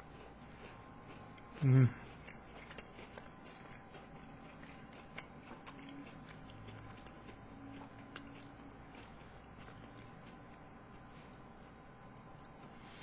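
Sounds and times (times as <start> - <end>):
chewing with mouth clicks: 0.0 - 11.7.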